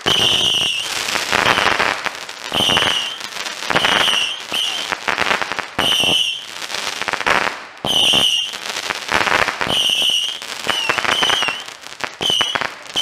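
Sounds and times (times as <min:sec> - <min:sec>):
whistling rockets launching: 0:00.0 - 0:01.8, 0:02.5 - 0:04.9, 0:05.8 - 0:06.5, 0:07.9 - 0:08.5, 0:09.6 - 0:13.0.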